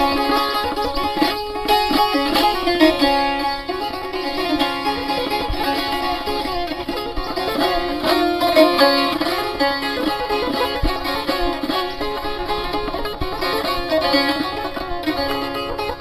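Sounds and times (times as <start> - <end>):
plucked string instrument music: 0.0 - 16.0.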